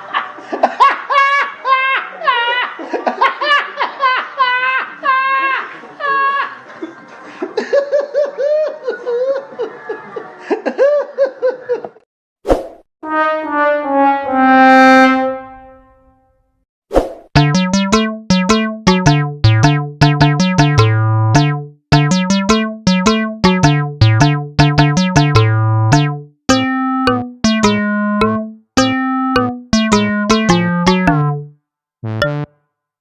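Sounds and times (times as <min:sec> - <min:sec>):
bass line: 0:17.4 - 0:32.5
bouncy electric keyboard tune: 0:17.4 - 0:32.5
held synthesizer note: 0:17.4 - 0:32.5.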